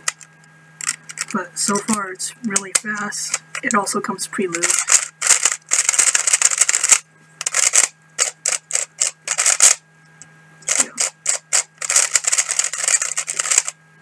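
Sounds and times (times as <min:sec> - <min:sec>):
plastic puzzle cube clacking: 0:04.5 - 0:09.8, 0:10.7 - 0:13.8.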